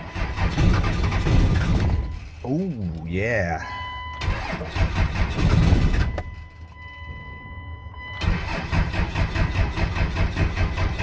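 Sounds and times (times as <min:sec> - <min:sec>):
starter cranking diesel engine: 0:00.0 - 0:02.4, 0:04.2 - 0:06.2, 0:08.2 - 0:11.0.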